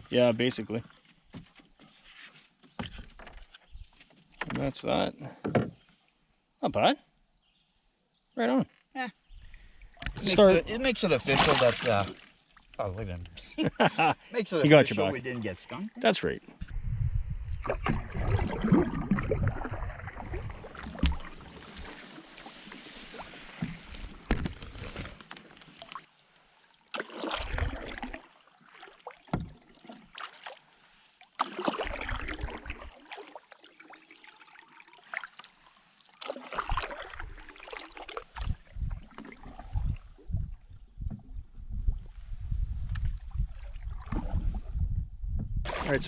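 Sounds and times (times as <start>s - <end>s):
paddle strokes splashing water: 11.0s - 12.8s, 17.6s - 40.3s, 45.7s - 46.0s.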